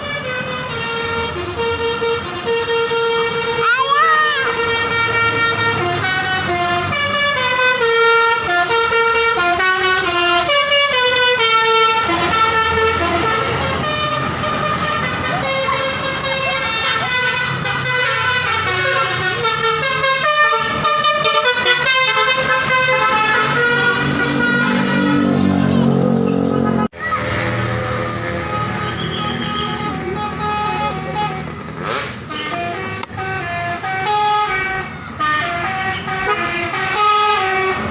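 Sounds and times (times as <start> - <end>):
multi-tone bus horn tune: 0.0 - 37.9
low engine rumble: 23.6 - 34.7.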